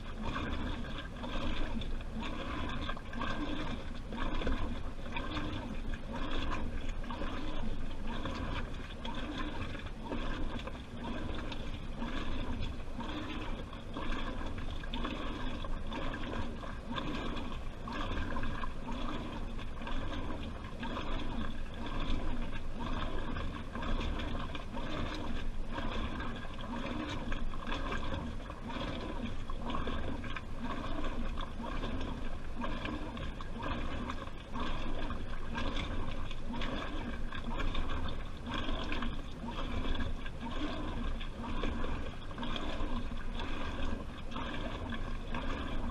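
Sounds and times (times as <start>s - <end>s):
water sloshing and gurgling: 0.0s - 45.9s.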